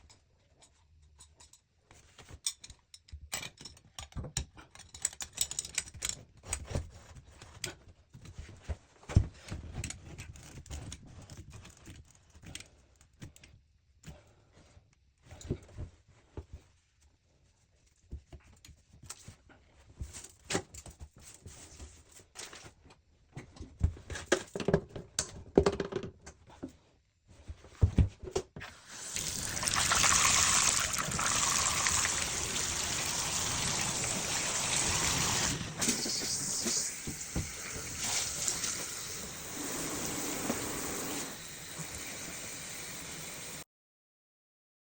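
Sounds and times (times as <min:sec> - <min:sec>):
water running from a tap: 0:28.8 - 0:43.6.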